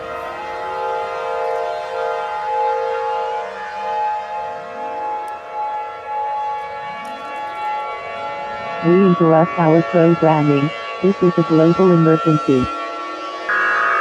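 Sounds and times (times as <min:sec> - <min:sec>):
sirens wailing upward: 0:00.0 - 0:14.0
steady siren tones: 0:00.0 - 0:14.0.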